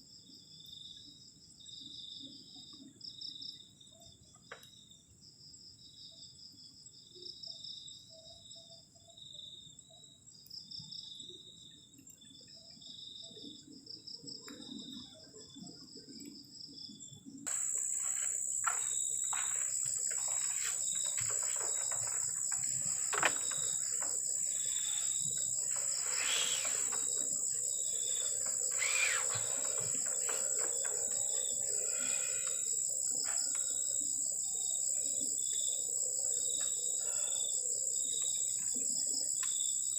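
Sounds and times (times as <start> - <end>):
night insects trilling: 0.0 - 39.9.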